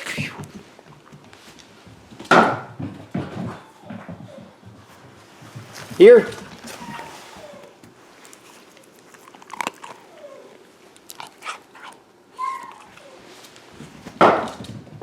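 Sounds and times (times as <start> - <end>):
puppy chewing: 5.2 - 14.8.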